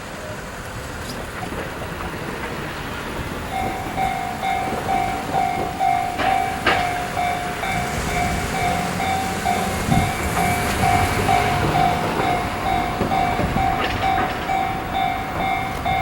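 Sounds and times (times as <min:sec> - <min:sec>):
train low rumble: 0:00.0 - 0:16.0
level-crossing warning bell: 0:03.2 - 0:16.0.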